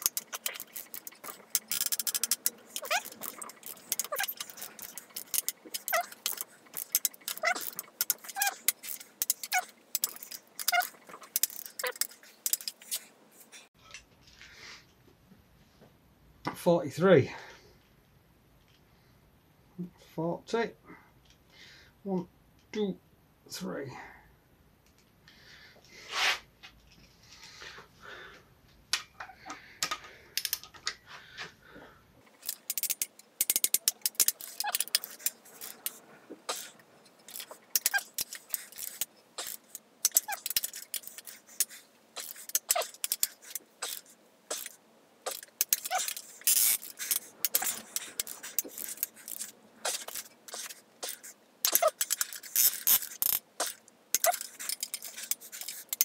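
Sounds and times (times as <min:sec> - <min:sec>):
torque wrench ratcheting clicks: 0:00.0 - 0:13.0, 0:32.4 - 0:36.7, 0:37.3 - 0:56.0.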